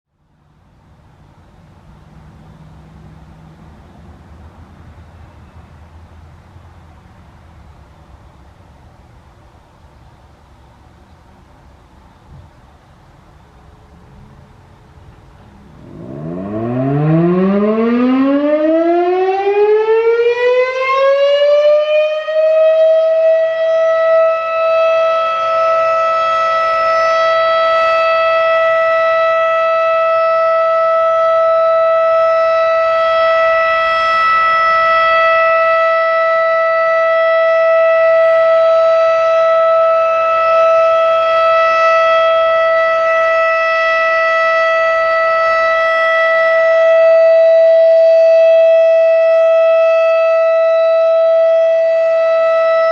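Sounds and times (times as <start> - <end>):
warning siren winding up: 15.8 - 52.9.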